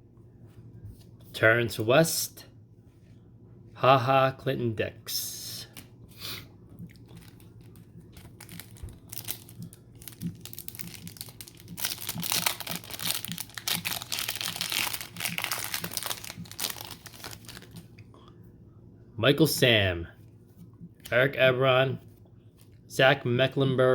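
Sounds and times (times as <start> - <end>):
card pack wrapper crinkling and tearing: 6.9 - 17.9.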